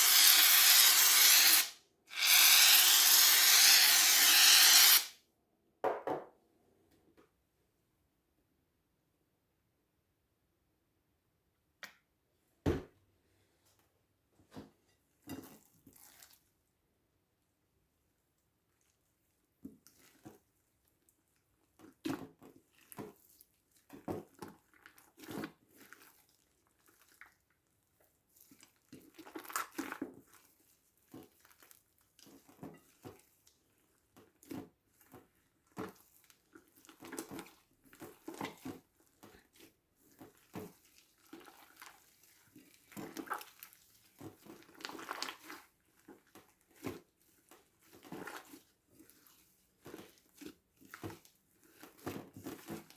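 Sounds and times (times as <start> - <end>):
slime squelching: 15.4 - 16.6, 18.8 - 52.9.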